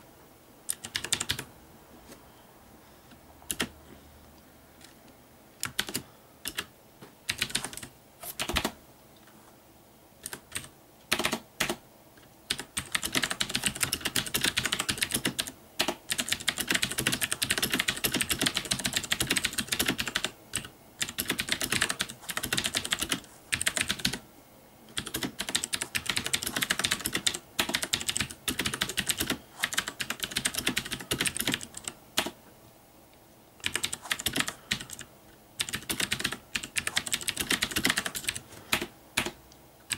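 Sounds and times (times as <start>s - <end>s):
clicky mechanical keyboard typing: 0.7s - 1.5s, 3.5s - 3.7s, 5.6s - 6.7s, 7.3s - 8.8s, 10.2s - 11.8s, 12.5s - 24.2s, 24.9s - 32.4s, 33.6s - 39.9s.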